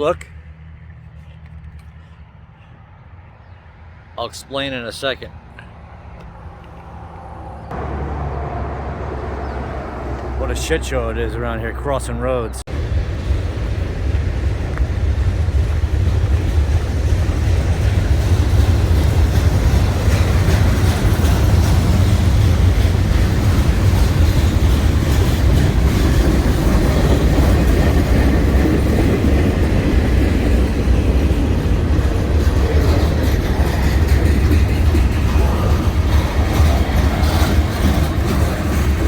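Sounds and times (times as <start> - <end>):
freight train cars rolling: 12.6 - 39.0.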